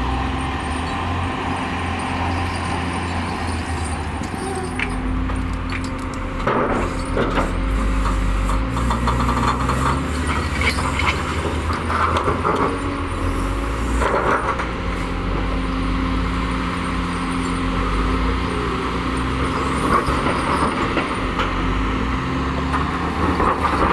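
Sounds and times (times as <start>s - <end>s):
heavy diesel machinery running: 0.0s - 23.9s
metallic clanking and rattling: 2.0s - 12.8s.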